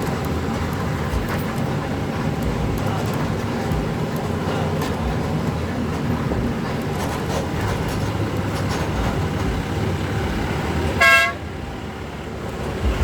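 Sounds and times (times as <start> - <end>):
vehicle and road rumble: 0.0 - 13.0
vehicle horn toot: 11.0 - 11.5.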